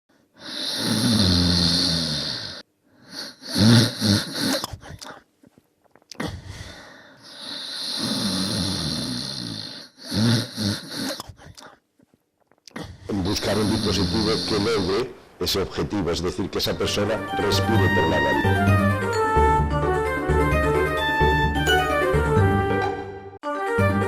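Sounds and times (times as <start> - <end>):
person snoring: 0.4 - 5.2, 6.1 - 11.2, 12.7 - 15.2
snorting breaths: 12.7 - 15.0.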